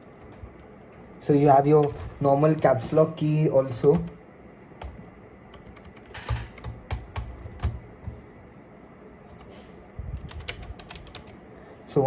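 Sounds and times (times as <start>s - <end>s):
keyboard keys clicking: 4.8s - 7.8s, 10.2s - 11.4s.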